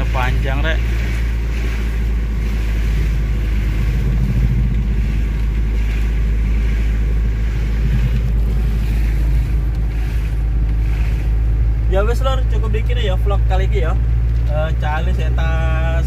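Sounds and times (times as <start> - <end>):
road noise: 0.0 - 16.0
vehicle engine running: 0.0 - 16.0.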